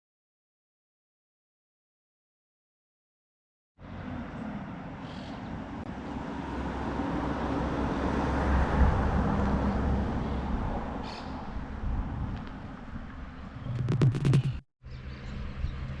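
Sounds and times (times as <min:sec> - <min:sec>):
motorcycle engine running: 0:13.6 - 0:14.6.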